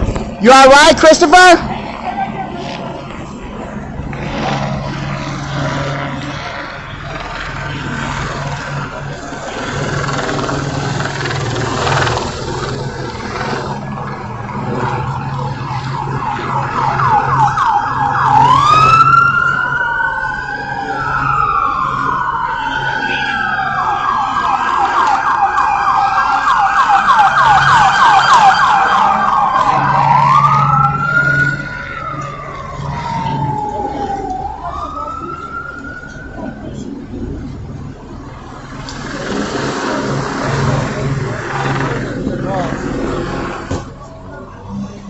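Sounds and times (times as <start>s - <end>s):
police sirens wailing: 0.0s - 45.0s.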